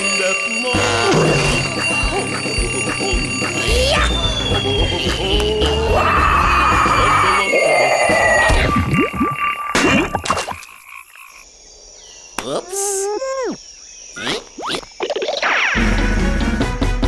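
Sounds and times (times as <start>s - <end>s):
wavering animal-like call: 0.6s - 10.7s.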